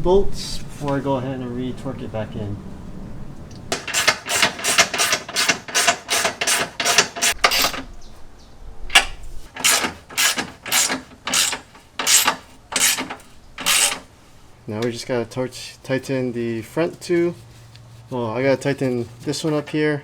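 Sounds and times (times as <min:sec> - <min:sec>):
ratchet wrench clicking: 0:03.7 - 0:07.8, 0:08.9 - 0:14.1.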